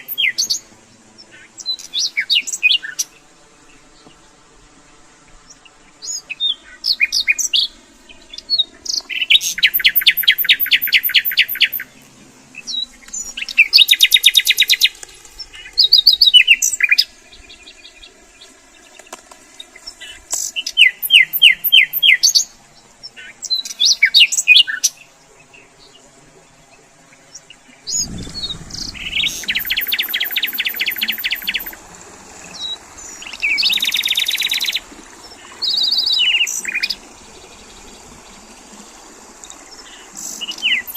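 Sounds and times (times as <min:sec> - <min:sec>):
low background noise: 0:00.0 - 0:40.9
songbirds trilling: 0:27.2 - 0:40.9.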